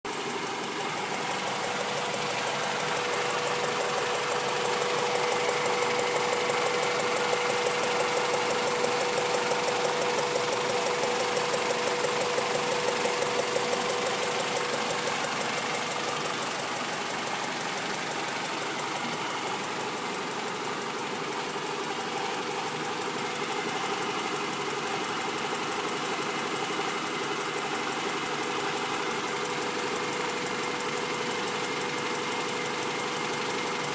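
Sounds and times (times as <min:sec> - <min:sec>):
car engine idling with rapid ticking: 0:00.0 - 0:33.9.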